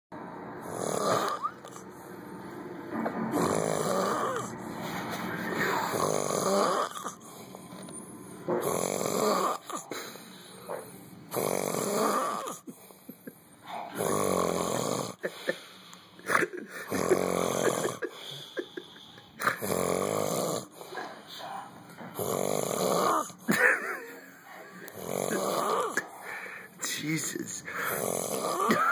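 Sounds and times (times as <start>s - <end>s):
heavy rasping snores: 0.6s - 1.8s, 3.3s - 4.6s, 5.6s - 7.6s, 8.6s - 10.2s, 11.3s - 12.8s, 14.0s - 15.6s, 16.8s - 18.2s, 19.4s - 20.9s, 22.2s - 23.5s, 24.9s - 26.4s, 27.7s - 28.9s.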